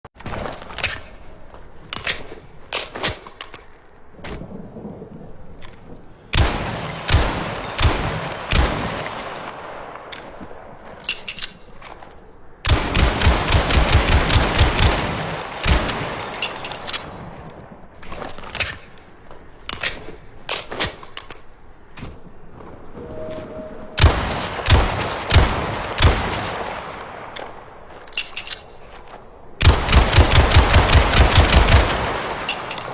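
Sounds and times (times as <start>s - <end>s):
pistol gunshots echoing: 6.3s - 10.0s
rapid gunshots: 12.7s - 16.3s, 29.6s - 32.6s.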